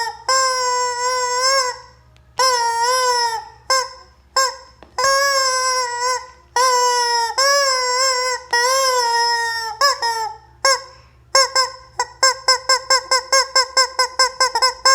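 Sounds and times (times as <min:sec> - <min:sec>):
rubber chicken toy squawking: 0:00.0 - 0:14.9.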